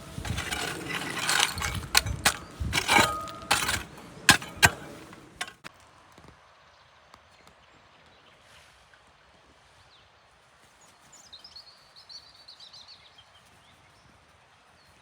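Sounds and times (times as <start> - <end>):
scraping on masonry: 0.0 - 5.7.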